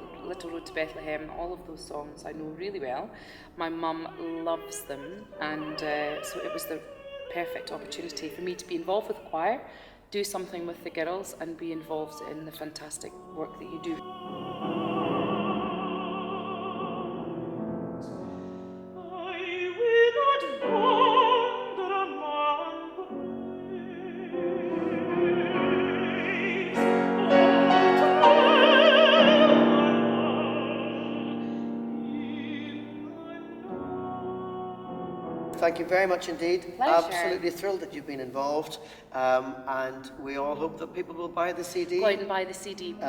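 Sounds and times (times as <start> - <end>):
piano accompaniment: 0.0 - 9.2, 10.3 - 38.6
operatic voice singing: 3.6 - 9.4, 11.4 - 17.3, 19.0 - 38.0.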